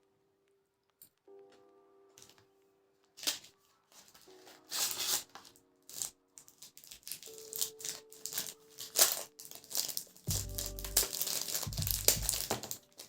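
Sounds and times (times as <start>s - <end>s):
soft background music: 0.0s - 13.0s
rustling and rattling of objects: 3.2s - 13.0s.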